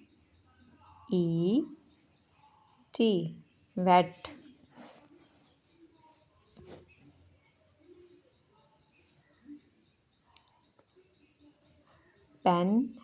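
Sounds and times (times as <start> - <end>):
bird chirping: 5.3 - 13.0.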